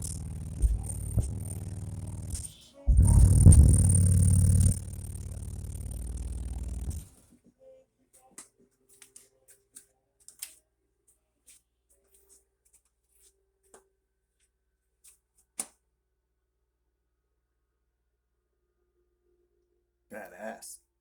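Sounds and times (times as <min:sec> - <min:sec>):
scattered clicks: 0:00.0 - 0:07.1
faint steady hum: 0:00.0 - 0:07.2.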